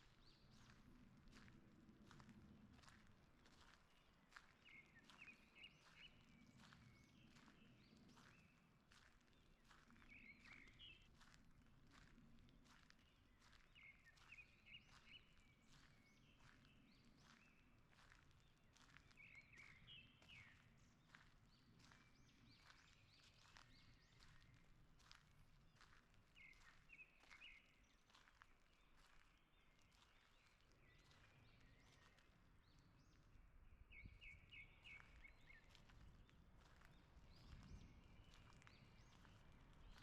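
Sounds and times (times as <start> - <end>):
soft footsteps on woodland path: 0.0 - 40.0
songbirds chirping: 0.0 - 40.0.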